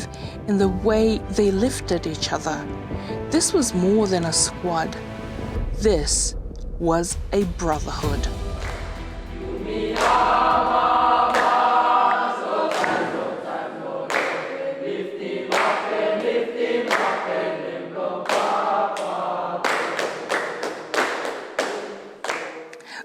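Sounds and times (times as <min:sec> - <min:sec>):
sharp percussive hits: 0:07.2 - 0:11.8
voices singing in harmony: 0:08.2 - 0:20.5.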